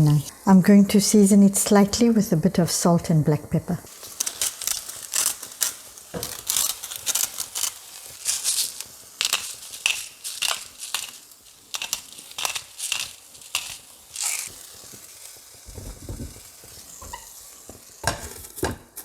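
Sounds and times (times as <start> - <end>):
spice mill grinding: 3.9 - 19.0.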